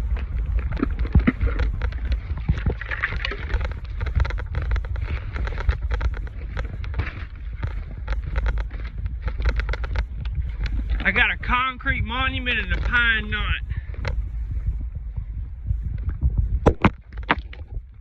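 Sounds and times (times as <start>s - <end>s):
wind buffeting microphone: 0.0s - 18.0s.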